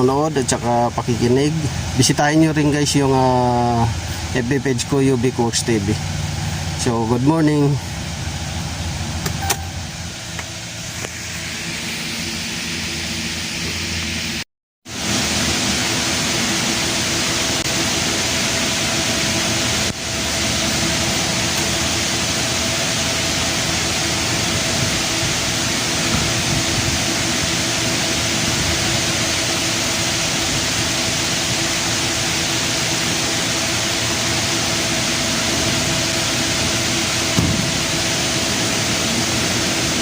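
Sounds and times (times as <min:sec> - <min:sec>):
truck engine idling: 0:00.0 - 0:11.9.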